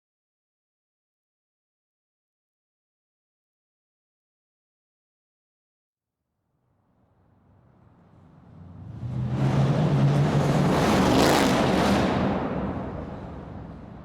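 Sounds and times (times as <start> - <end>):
muscle car engine rumbling past: 7.8 - 14.0.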